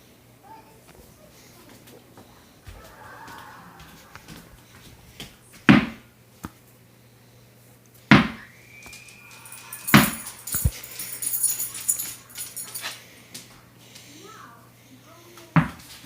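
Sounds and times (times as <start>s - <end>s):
tennis ball bouncing on floor: 5.7s - 6.6s
thin high whine: 8.3s - 13.0s.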